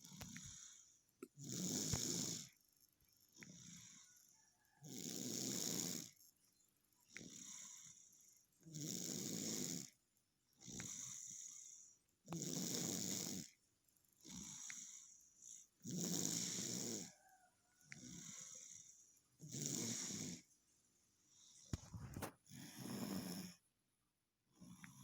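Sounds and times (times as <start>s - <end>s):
toddler snoring: 0.0s - 2.6s, 3.4s - 6.2s, 7.1s - 13.6s, 14.2s - 20.5s, 21.3s - 23.6s, 24.6s - 25.0s
soft hissing breath: 0.1s - 2.6s, 14.4s - 23.6s.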